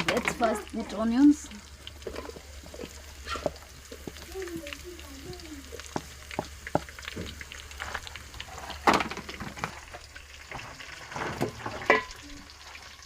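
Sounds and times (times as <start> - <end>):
onions sizzling in a pan: 0.0 - 13.0
spoon knocking against a pan: 5.9 - 7.3.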